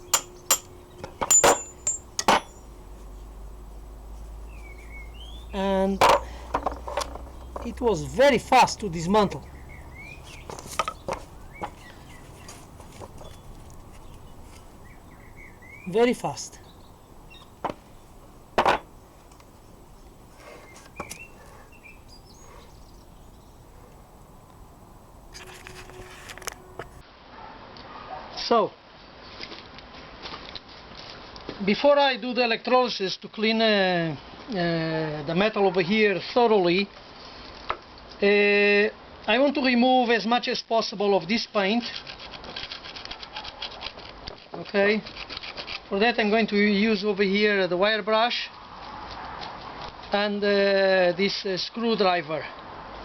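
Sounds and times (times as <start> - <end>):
metal-on-metal knocks: 0.0 - 3.7, 5.9 - 14.8, 18.5 - 19.0
faint bird chirps: 2.5 - 6.5, 9.4 - 18.2, 18.9 - 24.4.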